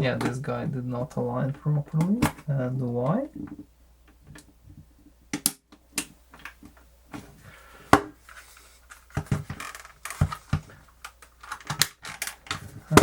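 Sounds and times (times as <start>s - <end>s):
plastic clicks and knocks: 9.1s - 13.0s.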